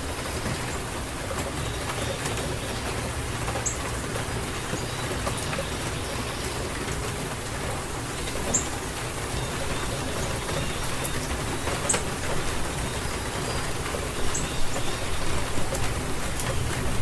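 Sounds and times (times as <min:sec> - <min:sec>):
raindrops ticking: 0:00.0 - 0:17.0
steady rain: 0:00.0 - 0:17.0.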